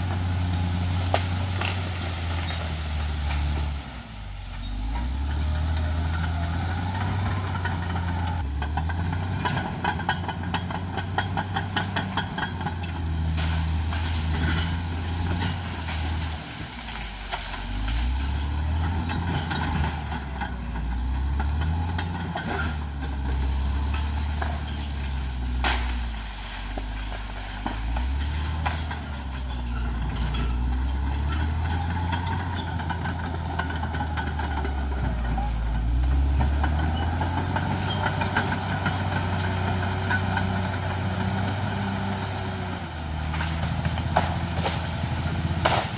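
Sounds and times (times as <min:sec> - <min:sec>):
bulldozer diesel engine running hard: 0:00.0 - 0:45.9
sharp cracks and clanks: 0:43.3 - 0:45.9.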